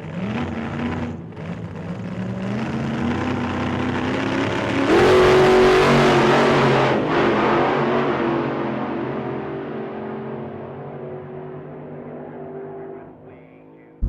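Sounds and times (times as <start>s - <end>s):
car engine accelerating: 0.0s - 13.2s.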